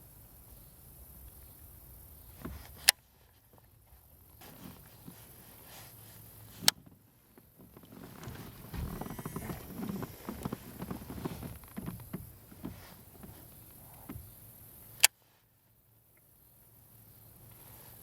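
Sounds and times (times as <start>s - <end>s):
small irregular knocks and taps: 7.4s - 14.4s.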